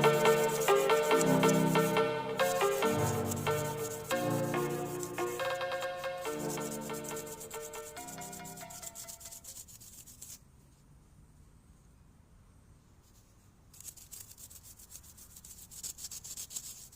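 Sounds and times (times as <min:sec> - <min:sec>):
rubbing strokes on metal: 0:00.0 - 0:10.4, 0:13.8 - 0:16.9.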